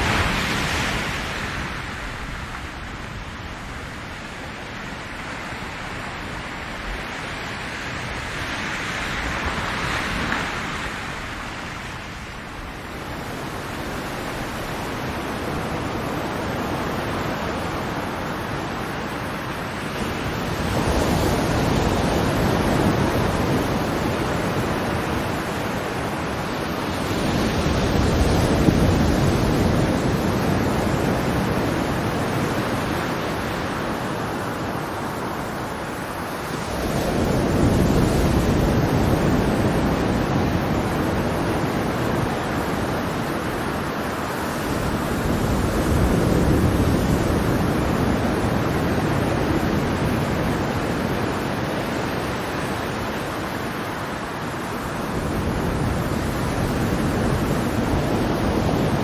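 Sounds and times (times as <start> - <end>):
ocean waves washing in: 0.0 - 59.0.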